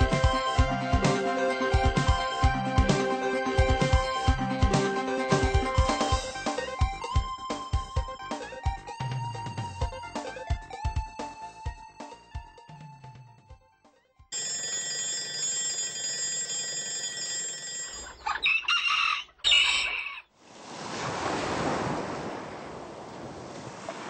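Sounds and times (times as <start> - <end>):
steady electronic ringing: 14.3 - 18.2.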